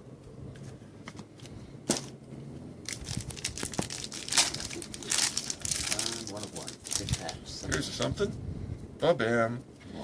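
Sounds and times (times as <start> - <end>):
card pack wrapper crinkling: 2.9 - 7.9.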